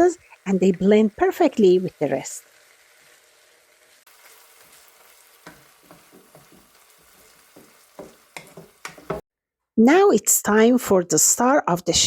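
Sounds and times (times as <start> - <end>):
vegetables sizzling in butter: 0.0 - 9.2
utensil scraping pan: 4.1 - 9.2.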